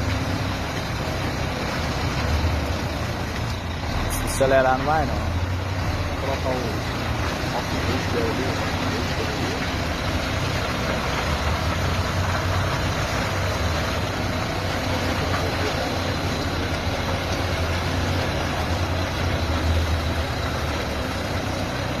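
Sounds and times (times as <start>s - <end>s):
diesel truck engine drone: 0.0s - 22.0s.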